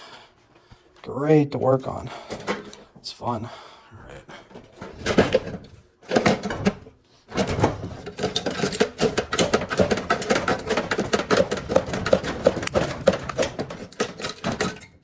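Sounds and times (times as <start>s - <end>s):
metallic clicking of hand tools: 1.8s - 2.9s, 4.6s - 15.0s.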